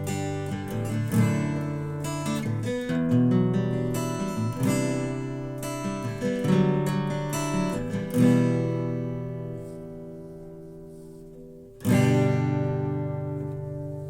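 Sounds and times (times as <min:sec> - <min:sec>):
acoustic guitar picked and strummed: 0:00.0 - 0:14.0.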